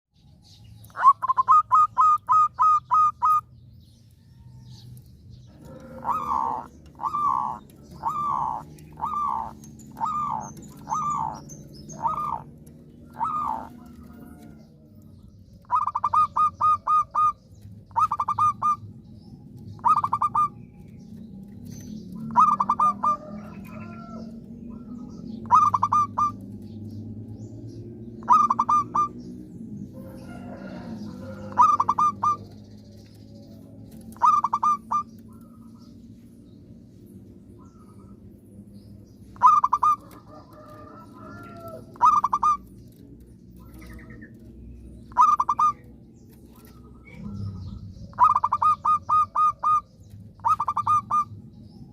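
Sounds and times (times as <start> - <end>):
dove cooing: 0.9 - 3.5, 5.4 - 19.1, 19.7 - 26.8, 28.1 - 35.9, 39.3 - 51.6
rapid staccato cooing: 5.6 - 12.6.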